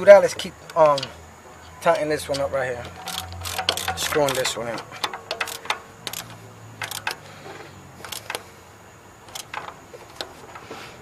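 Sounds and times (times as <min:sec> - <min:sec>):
metallic clicks of hand tools: 0:00.6 - 0:01.2, 0:02.3 - 0:07.3, 0:08.0 - 0:08.5, 0:09.3 - 0:10.6.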